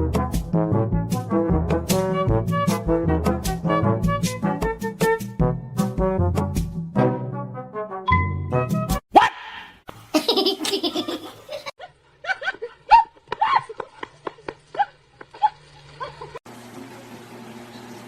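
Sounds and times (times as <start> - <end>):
person laughing: 10.0 - 16.4.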